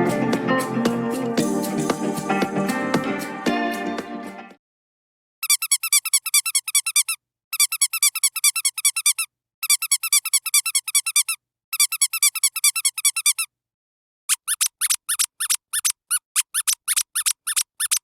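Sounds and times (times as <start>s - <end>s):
dog squeaky toy squeaking: 5.4s - 13.5s, 14.3s - 18.0s.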